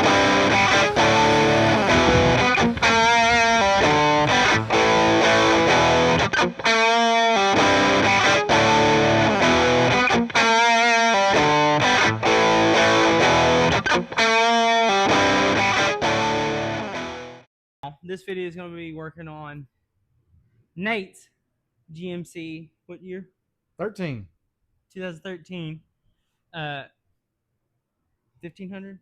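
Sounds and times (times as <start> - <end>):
rock music with distorted guitar: 0.0 - 17.4.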